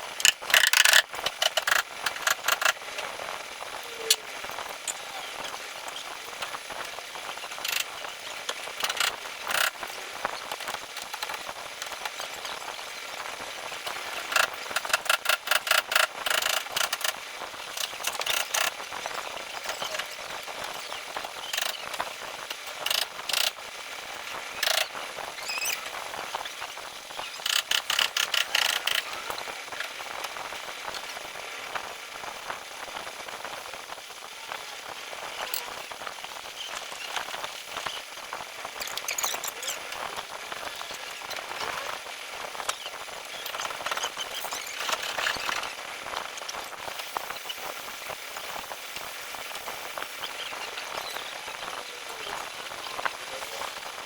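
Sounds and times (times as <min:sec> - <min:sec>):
rapid clicking: 0:00.0 - 0:03.1, 0:07.5 - 0:09.9, 0:13.7 - 0:23.6, 0:24.6 - 0:25.0, 0:27.2 - 0:30.3
hand tools clicking and knocking: 0:00.2 - 0:02.8, 0:08.8 - 0:09.7, 0:14.1 - 0:17.2, 0:17.8 - 0:18.7, 0:22.5 - 0:23.6, 0:27.4 - 0:29.1.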